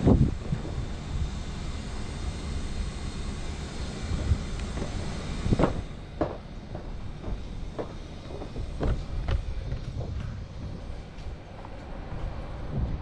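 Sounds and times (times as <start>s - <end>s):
truck engine running: 0.0s - 13.0s.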